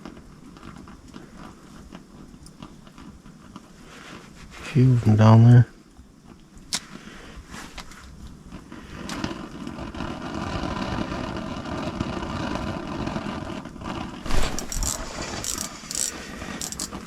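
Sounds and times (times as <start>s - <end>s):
sharp clicks or knocks: 14.3s - 17.0s.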